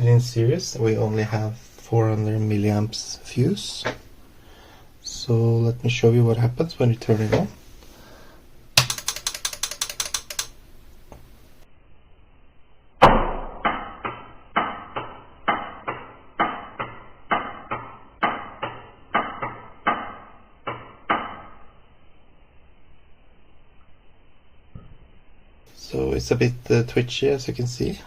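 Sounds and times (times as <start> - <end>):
amplifier relay clicking: 8.8 - 11.3.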